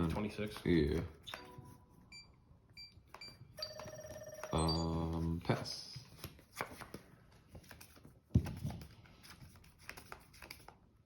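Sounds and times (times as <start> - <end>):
cards tapping and clicking: 0.0 - 1.5, 6.0 - 10.8.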